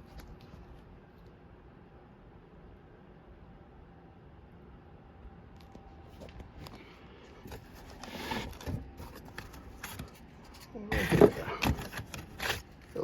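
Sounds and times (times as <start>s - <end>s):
cardboard scraping in box: 7.6s - 10.2s, 10.9s - 13.0s.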